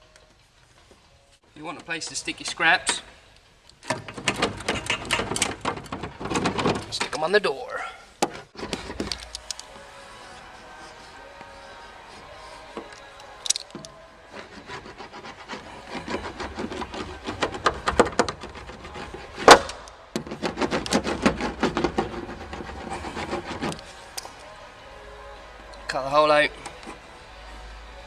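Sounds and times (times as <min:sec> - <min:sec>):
scratchy rubbing on metal panel: 0:14.3 - 0:19.5, 0:20.2 - 0:23.9.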